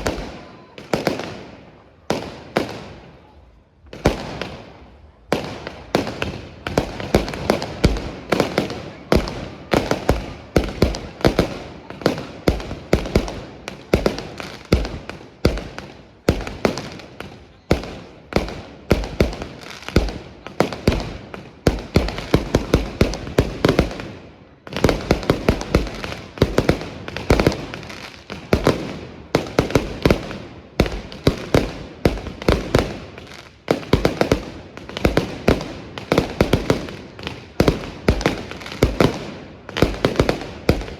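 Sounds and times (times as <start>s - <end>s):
fireworks bangs and crackling: 0.0s - 40.9s.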